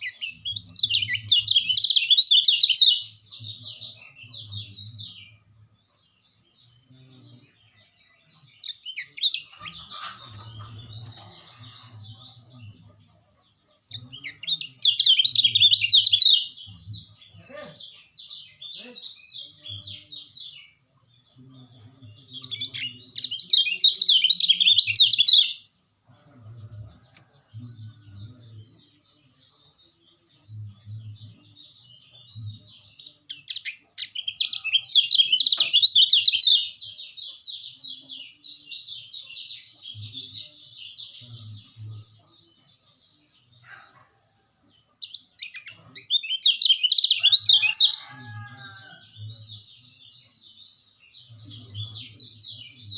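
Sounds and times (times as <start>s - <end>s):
bird chattering chirps: 8.6s - 13.0s.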